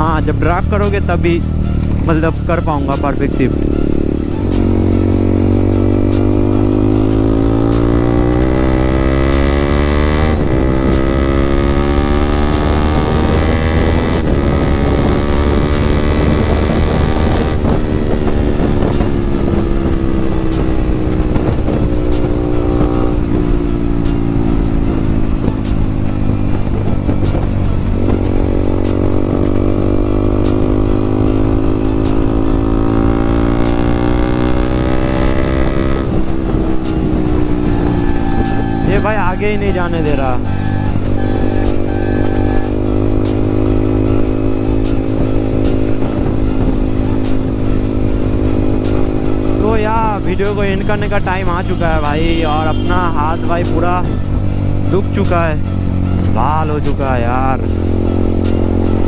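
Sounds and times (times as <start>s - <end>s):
motorcycle engine through loud exhaust: 0.0s - 59.0s.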